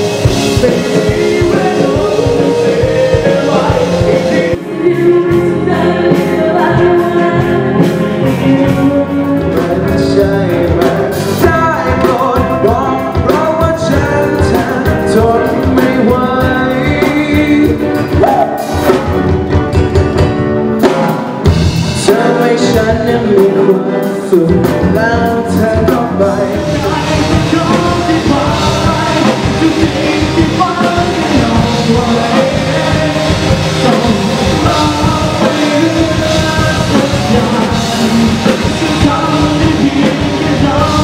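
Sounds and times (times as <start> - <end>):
lead singer: 0.0 - 19.7, 20.4 - 41.0
drum kit: 0.0 - 41.0
live band playing: 0.0 - 41.0.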